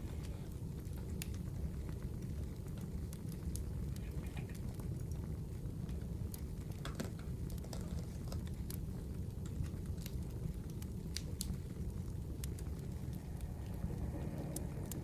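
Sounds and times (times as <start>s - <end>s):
wood fire crackling: 0.0s - 15.0s
low rumble: 11.9s - 15.0s.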